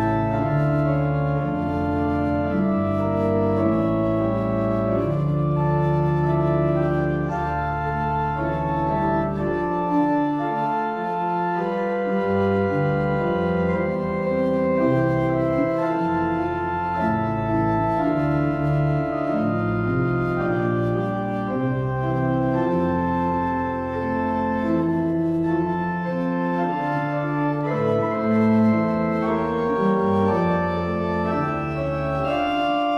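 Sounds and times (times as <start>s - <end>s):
organ chords: 0.0s - 32.9s.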